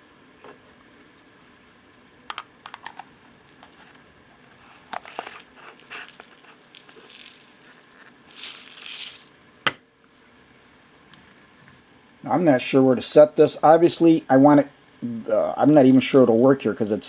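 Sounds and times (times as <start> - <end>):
salt crystals clicking and rattling: 5.0 - 9.3.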